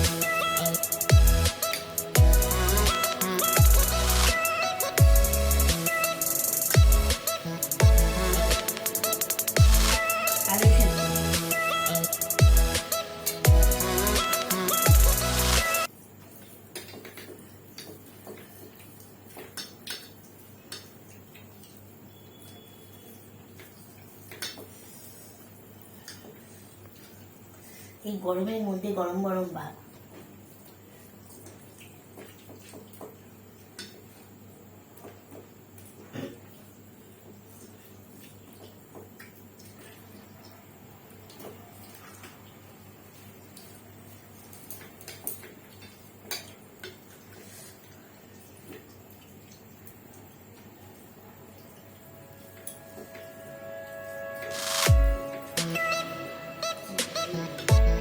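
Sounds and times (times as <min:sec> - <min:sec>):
low steady hum: 0:06.7 - 0:14.3
wet eating sounds: 0:13.4 - 0:27.9, 0:29.9 - 0:53.4.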